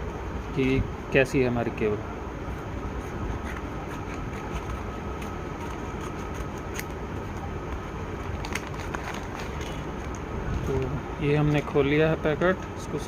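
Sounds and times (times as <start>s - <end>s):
packet crinkling: 8.2s - 10.2s.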